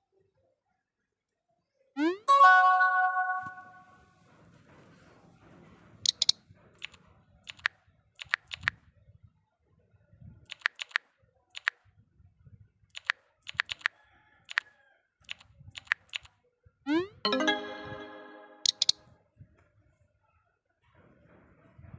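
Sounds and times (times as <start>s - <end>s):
sharp irregular clicks: 6.1s - 8.7s, 10.5s - 11.0s, 11.6s - 11.8s, 13.0s - 13.9s, 15.3s - 16.3s.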